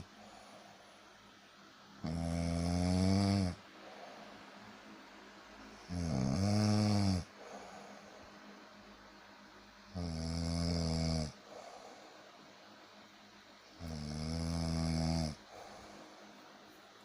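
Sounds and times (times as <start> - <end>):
person snoring: 2.0 - 3.6, 5.9 - 7.9, 9.9 - 11.8, 13.8 - 16.0.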